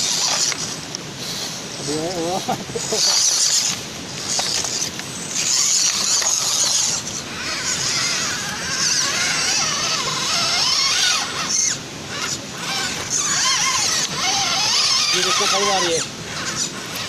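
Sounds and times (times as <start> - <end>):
hiss: 0.0 - 3.8
electric motor and gearbox whining: 0.0 - 17.0.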